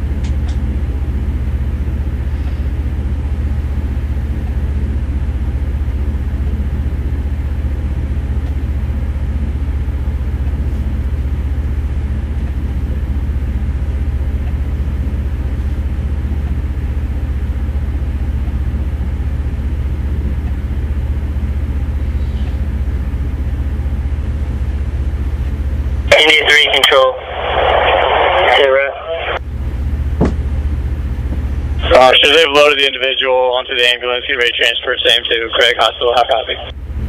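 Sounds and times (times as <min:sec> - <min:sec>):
loud low mechanical hum: 0:00.0 - 0:37.0.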